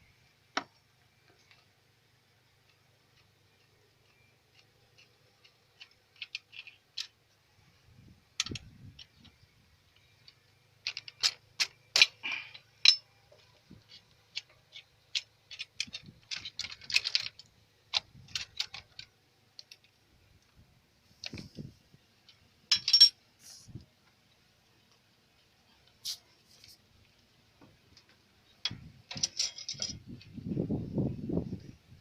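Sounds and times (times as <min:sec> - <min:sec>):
metallic clicks of hand tools: 0:02.7 - 0:07.2, 0:08.4 - 0:20.0, 0:28.6 - 0:30.0.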